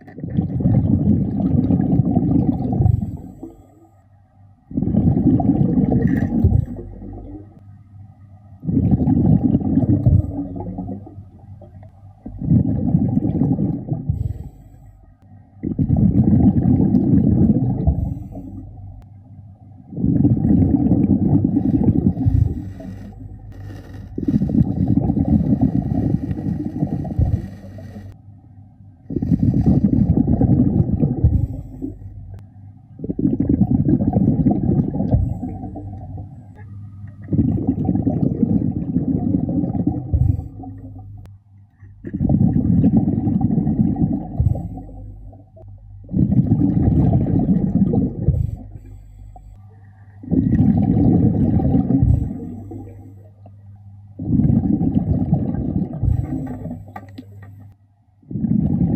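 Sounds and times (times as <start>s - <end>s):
exhaled bubbles rushing underwater: 0.0s - 3.7s, 4.7s - 7.6s, 8.6s - 14.8s, 15.6s - 19.0s, 19.8s - 28.2s, 29.1s - 41.3s, 42.0s - 57.4s, 58.2s - 58.9s
diver inhaling through regulator: 13.6s - 15.1s, 21.3s - 28.2s, 29.1s - 32.3s, 42.2s - 45.3s, 46.2s - 53.2s.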